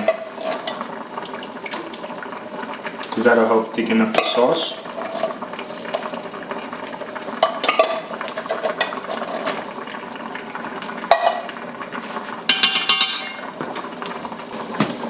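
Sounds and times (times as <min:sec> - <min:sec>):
utensil knocking and scraping pot: 0:00.0 - 0:01.0, 0:04.1 - 0:06.1, 0:07.4 - 0:09.7, 0:11.0 - 0:13.9
gravy bubbling at a boil: 0:00.0 - 0:15.0.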